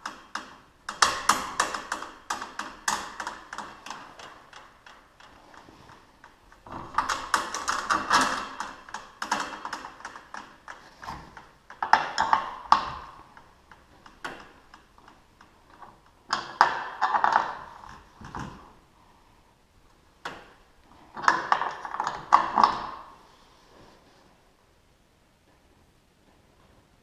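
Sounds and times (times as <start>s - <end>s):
metallic clicking of hand tools: 0.0s - 11.0s.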